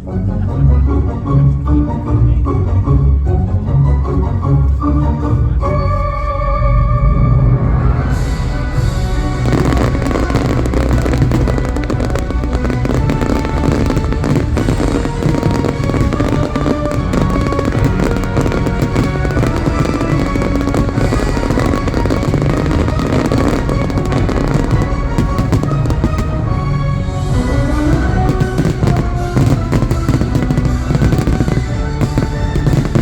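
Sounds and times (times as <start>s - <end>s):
loud show music: 8.0s - 33.0s
fireworks bursting and crackling: 8.9s - 33.0s.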